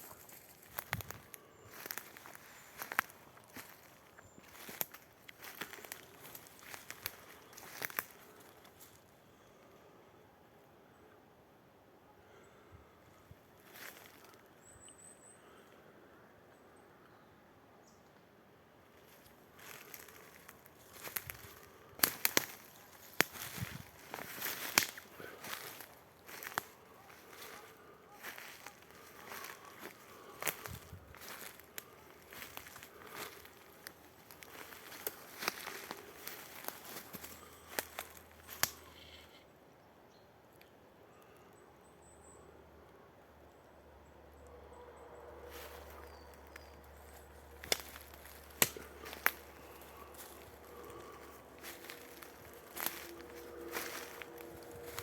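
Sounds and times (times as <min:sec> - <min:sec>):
footsteps on forest floor: 0:00.0 - 0:09.0, 0:19.0 - 0:39.1, 0:45.5 - 0:55.0
twigs crackling underfoot: 0:00.0 - 0:09.1, 0:13.6 - 0:14.5, 0:18.9 - 0:39.2, 0:45.4 - 0:55.0.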